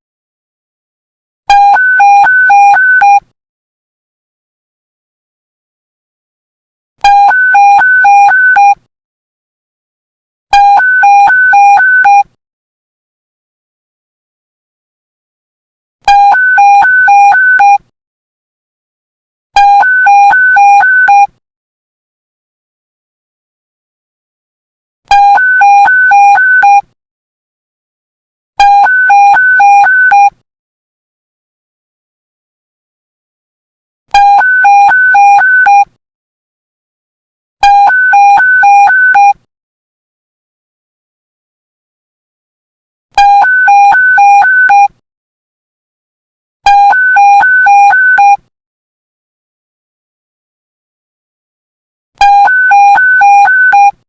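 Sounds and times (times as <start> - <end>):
alternating low and high alert beeps: 25.2 - 26.9, 34.2 - 35.9, 37.6 - 39.4, 43.2 - 45.0, 46.7 - 48.4, 52.2 - 54.0.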